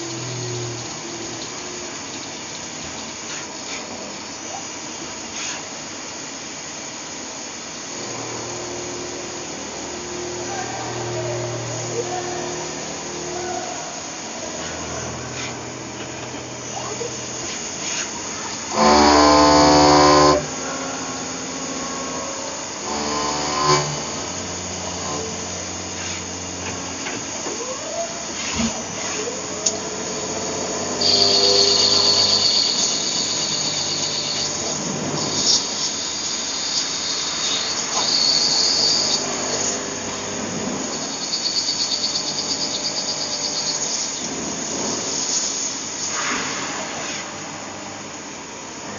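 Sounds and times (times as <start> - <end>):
high hissing: 0.0 - 48.8
lathe machine tones: 0.0 - 48.9
loud tone: 18.2 - 25.7, 27.5 - 35.6.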